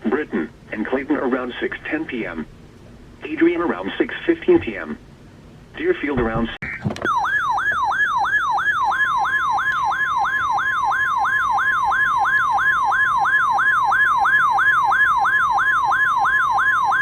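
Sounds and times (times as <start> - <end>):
warbling alert siren: 6.6 - 17.0.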